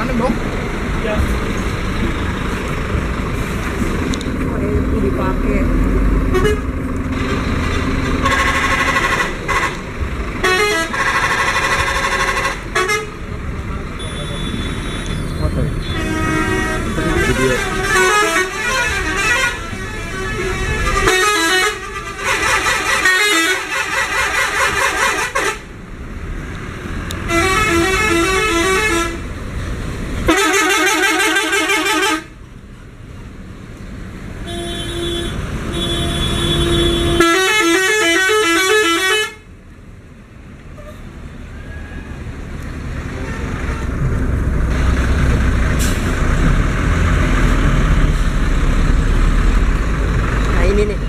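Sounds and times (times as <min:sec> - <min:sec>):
passing bus engine and tyres: 0:00.0 - 0:51.0
musical bus horns melody: 0:06.3 - 0:06.7, 0:08.2 - 0:13.2, 0:14.0 - 0:25.7, 0:27.2 - 0:29.3, 0:30.3 - 0:32.4, 0:34.4 - 0:39.5.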